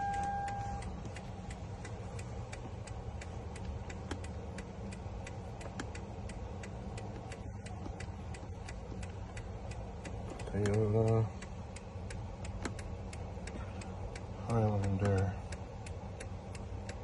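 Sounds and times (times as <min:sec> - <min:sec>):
short electronic beep: 0:00.0 - 0:00.8
low hum: 0:00.0 - 0:14.5
steady regular clicking: 0:00.0 - 0:17.0.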